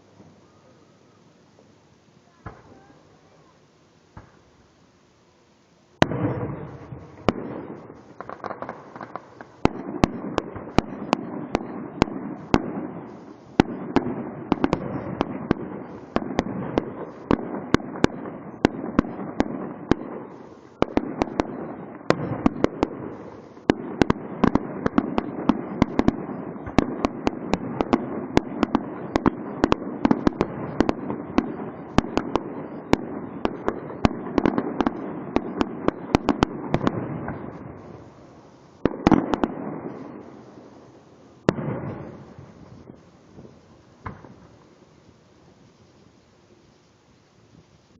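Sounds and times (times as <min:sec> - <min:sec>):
fireworks cracking: 0:05.9 - 0:47.9.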